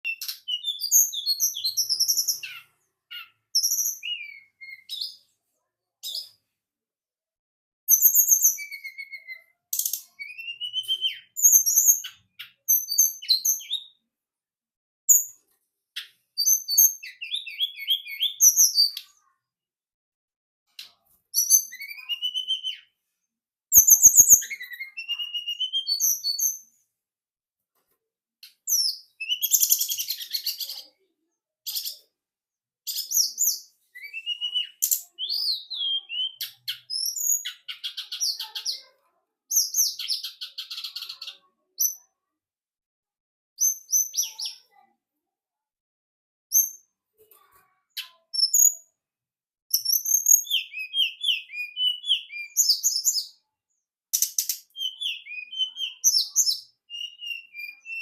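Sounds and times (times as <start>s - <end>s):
songbird chirping and whistling: 0.0s - 5.3s, 7.9s - 14.0s, 16.0s - 19.1s, 21.4s - 23.0s, 23.7s - 26.8s, 28.4s - 30.8s, 32.9s - 38.8s, 39.5s - 42.0s, 43.6s - 44.7s, 48.3s - 48.9s, 49.7s - 53.4s, 54.1s - 58.0s.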